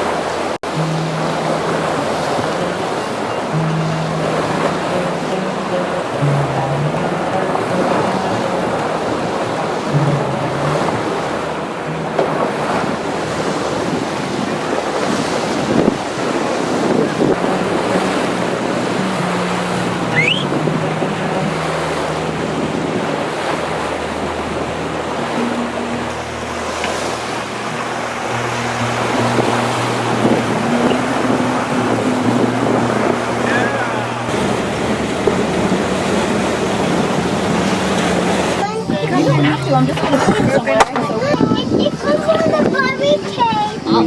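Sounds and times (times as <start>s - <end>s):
water rushing past boat hull: 0.0s - 44.0s
wind on microphone: 0.0s - 44.0s
brief rising chirp: 20.1s - 20.5s.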